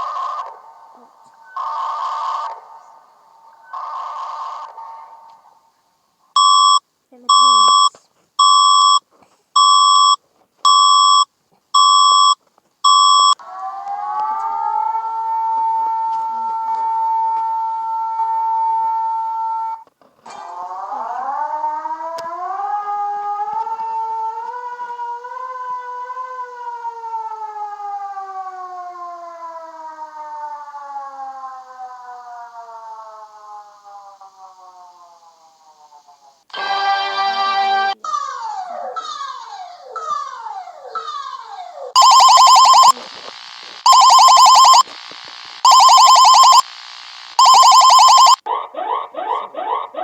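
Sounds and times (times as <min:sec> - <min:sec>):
shrill electronic beeps: 0:06.4 - 0:09.0, 0:09.6 - 0:11.2, 0:11.8 - 0:13.4, 0:42.0 - 0:43.0, 0:43.8 - 0:44.8, 0:45.6 - 0:46.7, 0:47.3 - 0:48.4
emergency alert siren winding down: 0:11.9 - 0:19.8, 0:20.4 - 0:38.0, 0:42.0 - 0:50.0
rising alert tone: 0:42.0 - 0:43.0, 0:43.9 - 0:44.8, 0:45.7 - 0:46.6, 0:47.4 - 0:48.4.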